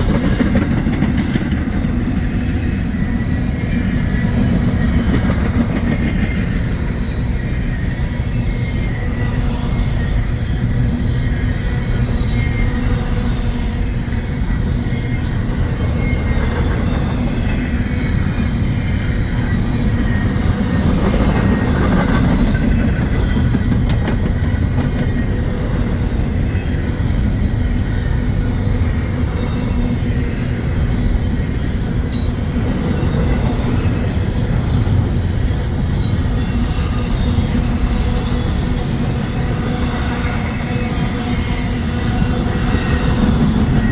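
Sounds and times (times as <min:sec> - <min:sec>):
freight train wheels rumbling: 0:00.0 - 0:43.9.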